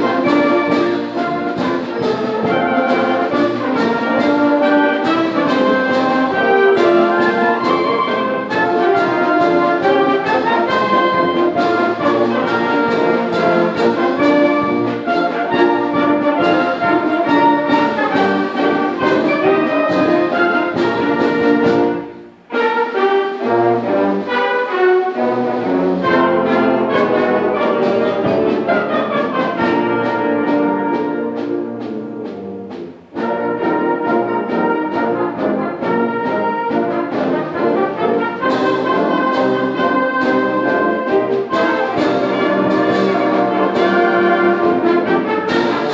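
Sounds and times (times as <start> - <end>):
brass: 0.0 - 45.9
symphonic band playing a march: 0.0 - 45.9.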